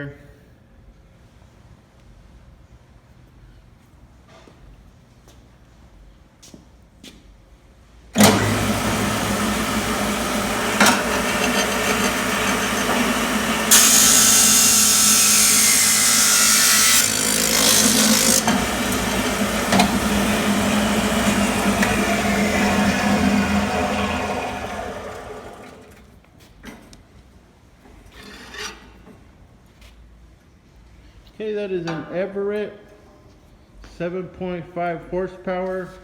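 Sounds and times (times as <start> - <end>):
abrasive wheel grinding steel: 8.2 - 26.0
chop saw motor humming: 8.2 - 26.1.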